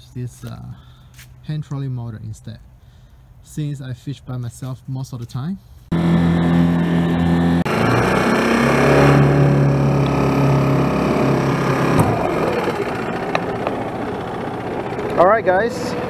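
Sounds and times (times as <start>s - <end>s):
outboard motor running: 5.9s - 16.0s.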